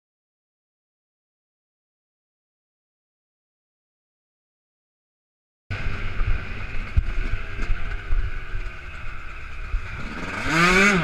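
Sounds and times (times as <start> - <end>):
wind buffeting microphone: 5.7 - 10.1
dirt bike engine revving: 5.7 - 11.0.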